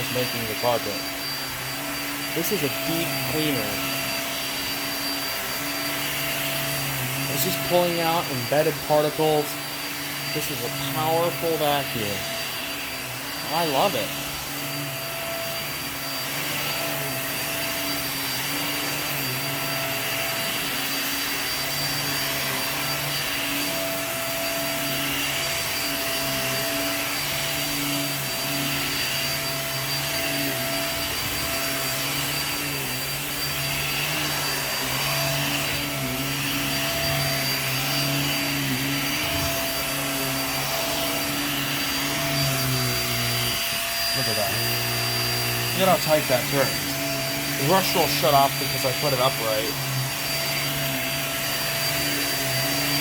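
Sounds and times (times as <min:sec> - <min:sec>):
vacuum cleaner running: 0:00.0 - 0:53.0.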